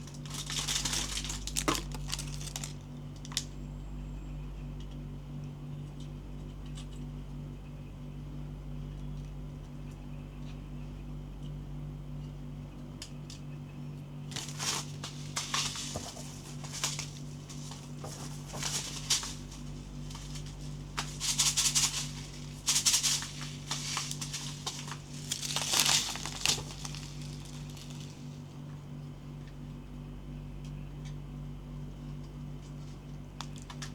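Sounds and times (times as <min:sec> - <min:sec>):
plastic packaging crinkling: 0:00.0 - 0:03.5, 0:14.3 - 0:28.4
steady low hum: 0:00.0 - 0:33.9.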